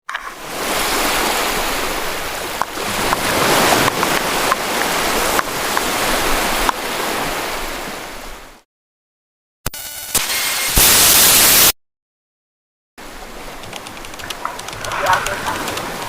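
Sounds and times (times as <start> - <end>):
waves breaking: 0.0 - 8.6, 13.0 - 16.0.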